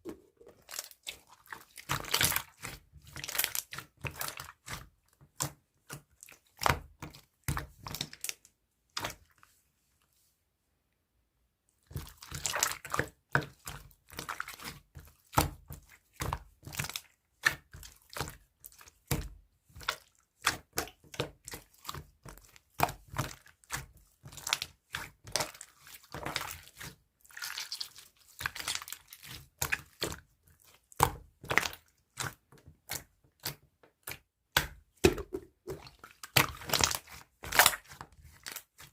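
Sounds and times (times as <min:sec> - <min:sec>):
slime squeezed with sticky crackles: 0:35.6 - 0:38.9.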